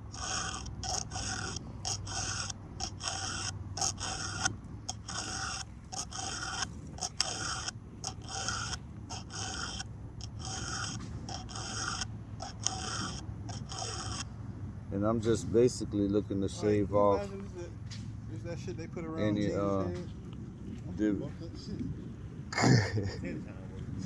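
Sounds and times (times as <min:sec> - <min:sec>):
file rasping on chainsaw teeth: 0:00.0 - 0:14.4.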